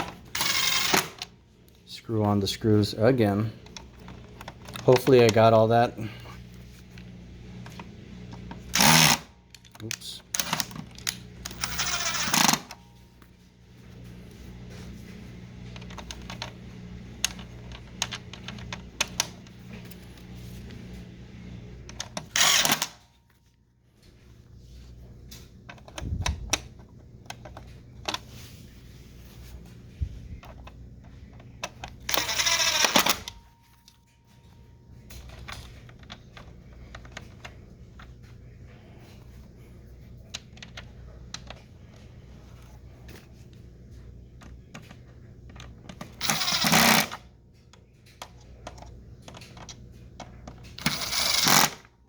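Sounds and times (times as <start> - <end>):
screwdriver and plastic clicks: 31.4 - 33.4, 44.4 - 47.2, 48.6 - 51.9.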